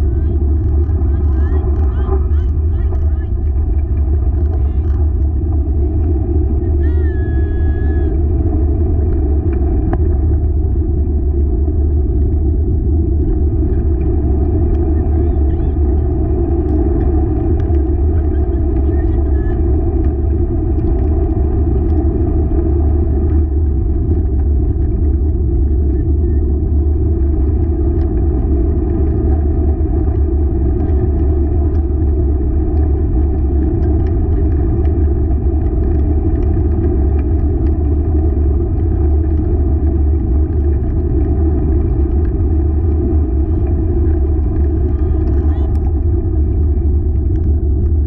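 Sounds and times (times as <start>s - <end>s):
wheeled rig rolling on trail: 11.4s - 48.0s.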